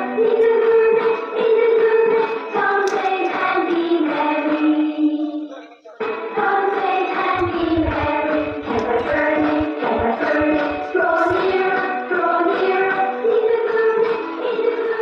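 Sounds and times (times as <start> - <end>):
group of voices singing: 0.0 - 5.5, 6.3 - 15.0
low thuds: 7.4 - 11.7.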